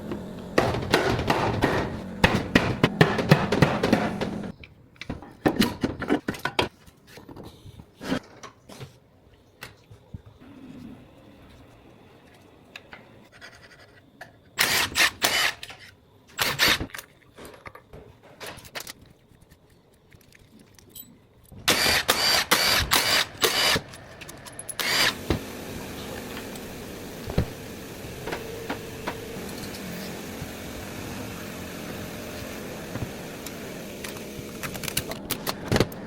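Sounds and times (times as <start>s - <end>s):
clattering and scraping: 0.0s - 4.5s, 23.8s - 30.8s
machine running: 0.0s - 4.5s, 21.7s - 36.0s.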